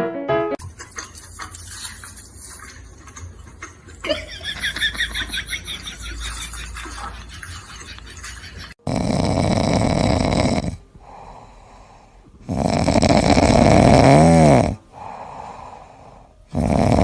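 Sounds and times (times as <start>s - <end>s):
loud snoring: 8.8s - 11.5s, 12.4s - 15.4s, 16.5s - 17.0s.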